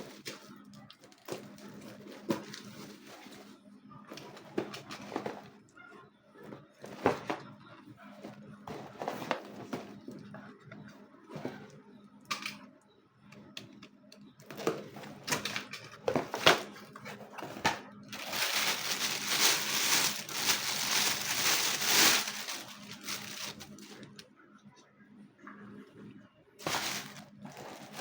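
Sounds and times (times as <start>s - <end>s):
packaging crinkling and rustling: 0.0s - 5.5s, 14.5s - 24.2s, 26.6s - 28.0s.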